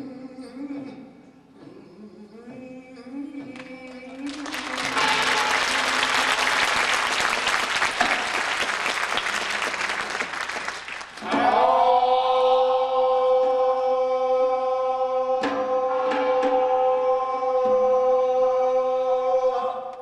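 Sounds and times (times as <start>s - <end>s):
audience applauding: 4.1s - 11.4s
voices chanting held note: 4.2s - 7.7s, 11.2s - 20.0s.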